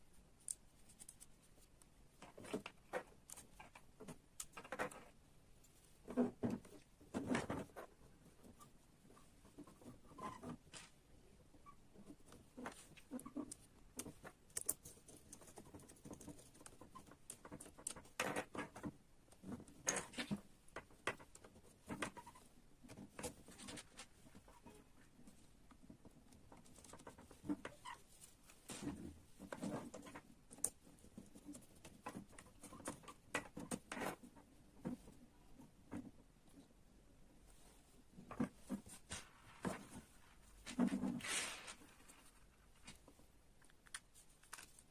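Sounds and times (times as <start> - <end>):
small plastic parts clicking: 13.5 - 18.8.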